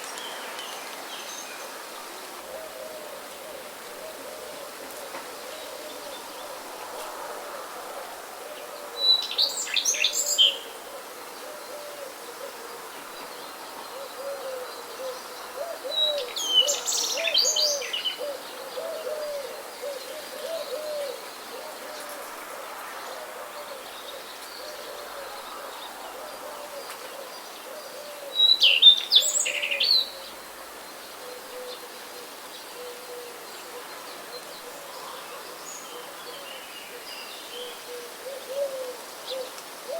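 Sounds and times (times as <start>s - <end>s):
rain hiss: 0.0s - 39.9s
songbird chirping: 0.0s - 39.9s
low hooting bird calls: 13.8s - 22.4s, 23.0s - 39.9s.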